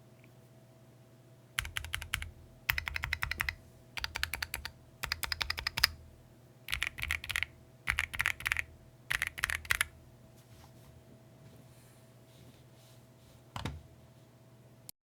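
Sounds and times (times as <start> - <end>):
mechanical keyboard typing: 1.6 - 6.0, 6.7 - 9.9.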